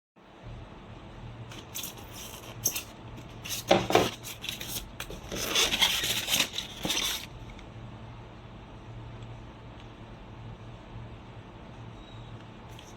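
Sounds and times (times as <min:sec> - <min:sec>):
low steady hum: 0:00.2 - 0:12.9
handling rustling and rubbing: 0:01.5 - 0:07.5.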